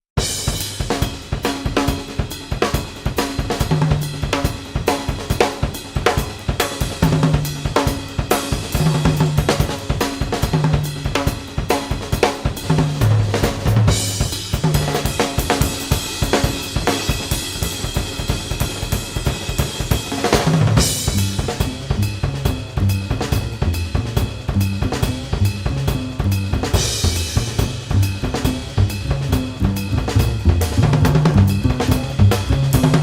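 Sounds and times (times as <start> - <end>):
drum kit beat: 0.2 - 33.0
held bass notes: 20.7 - 33.0.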